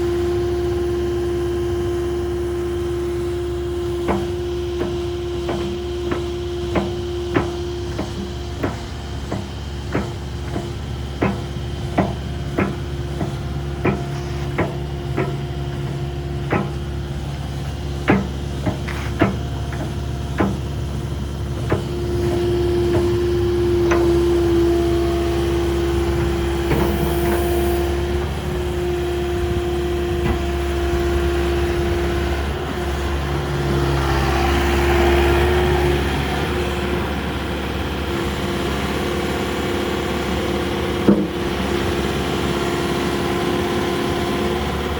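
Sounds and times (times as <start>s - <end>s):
excavator engine hum: 0.0s - 44.9s
sharp knocks: 18.1s - 20.7s.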